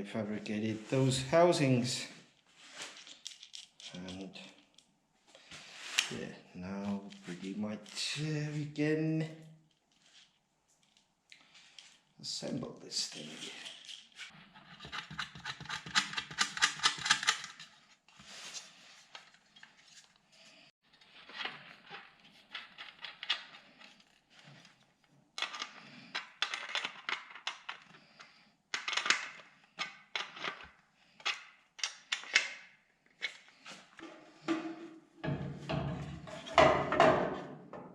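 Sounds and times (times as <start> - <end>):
small plastic parts clicking: 15.0 - 17.7, 28.7 - 32.6.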